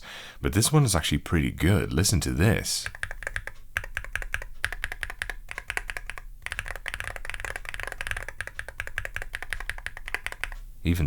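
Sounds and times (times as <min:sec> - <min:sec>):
rapid mechanical keyboard typing: 0:02.8 - 0:10.6.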